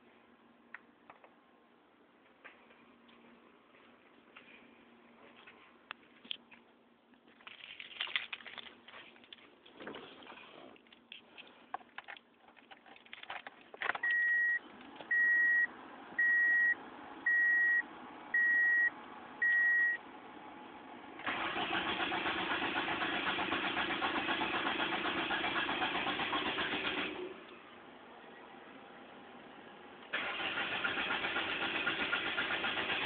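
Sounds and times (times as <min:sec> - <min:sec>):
dashboard warning chime beeping: 0:14.0 - 0:17.8, 0:18.4 - 0:20.0
car engine cranking: 0:21.2 - 0:27.2, 0:30.1 - 0:33.0.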